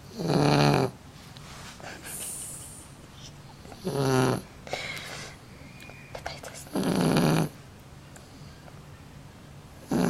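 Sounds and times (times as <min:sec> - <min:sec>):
dog snoring: 0:00.0 - 0:01.0, 0:03.8 - 0:04.5, 0:06.7 - 0:07.6, 0:09.8 - 0:10.0.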